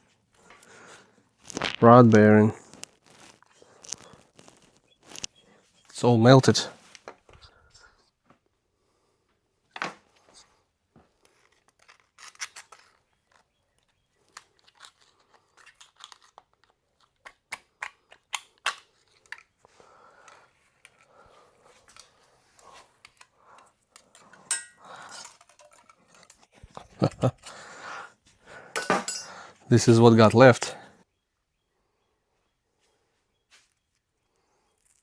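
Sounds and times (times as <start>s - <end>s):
metal clicks of tools and parts: 24.0s - 26.5s, 28.8s - 29.5s
ringing metal clink: 24.4s - 24.9s, 28.8s - 29.5s.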